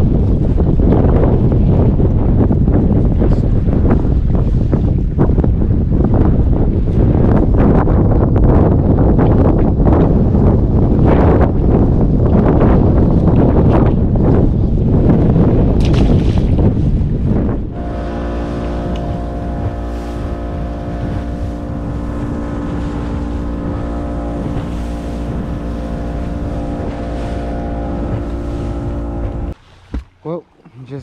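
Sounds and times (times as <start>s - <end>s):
wind buffeting microphone: 0.0s - 30.2s
boat motor running: 0.0s - 31.0s.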